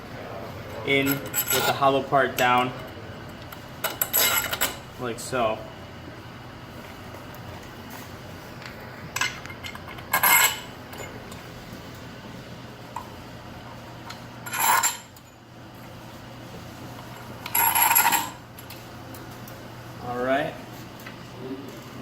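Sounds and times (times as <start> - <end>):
metal parts clinking and scraping: 1.0 - 1.8, 3.9 - 4.8, 9.2 - 11.2, 14.4 - 15.1, 17.4 - 18.4.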